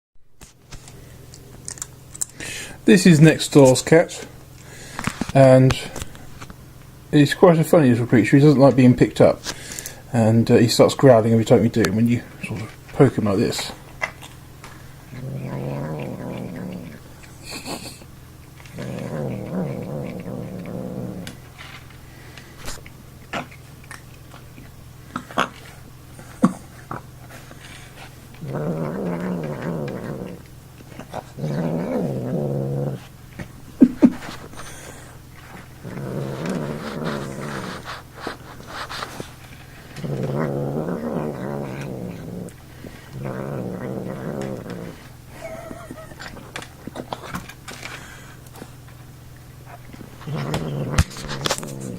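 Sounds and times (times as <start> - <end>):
cat growling: 11.5 - 21.8, 25.2 - 33.1, 33.8 - 48.0, 49.7 - 51.9.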